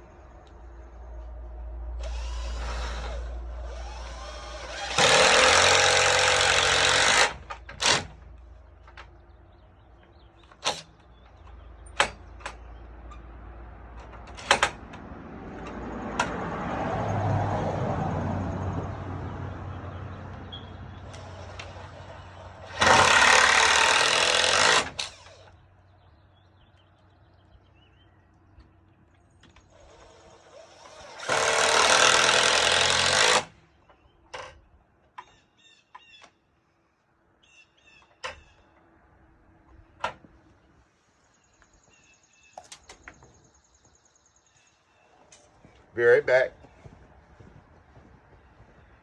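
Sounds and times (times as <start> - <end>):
power drill running: 2.0 - 8.0, 21.1 - 25.5, 29.8 - 33.5.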